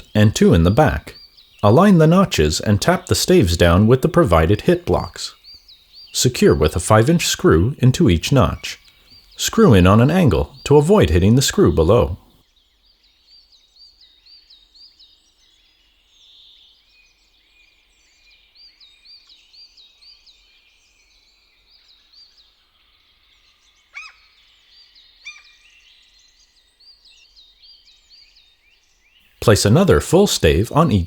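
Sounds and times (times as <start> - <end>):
sharp bird calls: 0.0 - 12.4, 23.7 - 26.4
songbirds chirping: 0.0 - 31.0.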